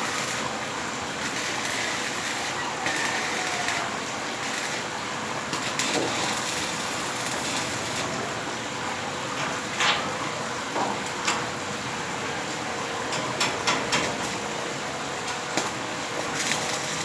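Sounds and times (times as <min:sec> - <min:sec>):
arc welding crackling hiss: 0:00.0 - 0:08.6, 0:13.0 - 0:17.0.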